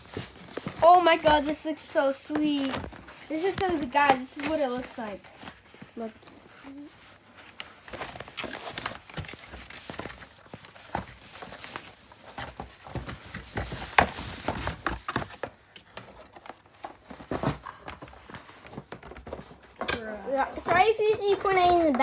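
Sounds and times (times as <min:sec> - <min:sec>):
packaging knocks and rustles: 0:00.0 - 0:22.0.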